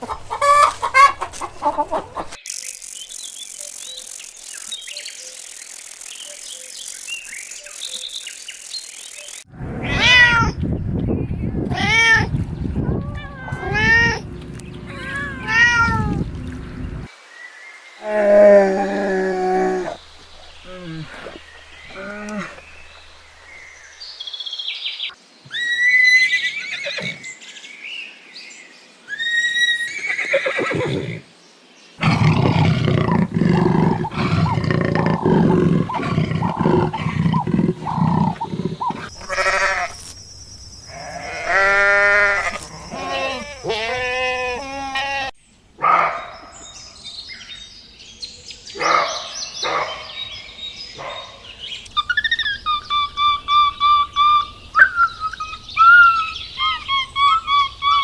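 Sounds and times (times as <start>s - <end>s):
farm animal calls: 0.0s - 2.4s, 11.7s - 17.1s, 32.0s - 40.1s, 40.9s - 46.3s, 51.0s - 58.0s.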